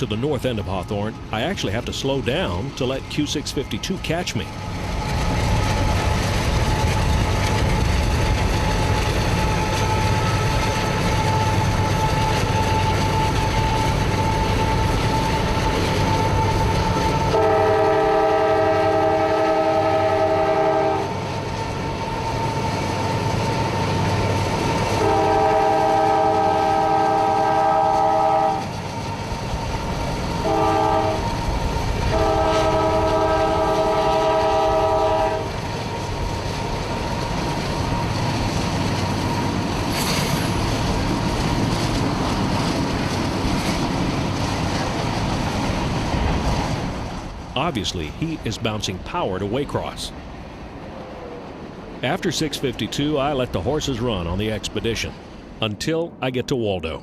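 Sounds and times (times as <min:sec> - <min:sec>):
freight train rumbling: 0:00.0 - 0:57.0
locomotive air horn blasts: 0:16.5 - 0:21.1, 0:25.0 - 0:28.7, 0:30.4 - 0:31.2, 0:32.1 - 0:35.5.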